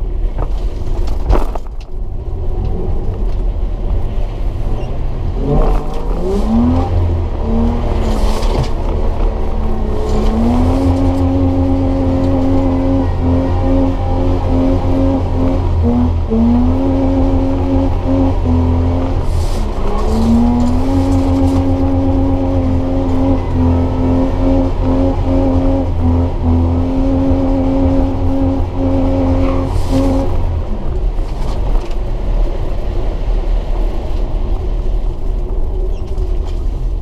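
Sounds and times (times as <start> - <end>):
engine revving: 4.6 - 31.4.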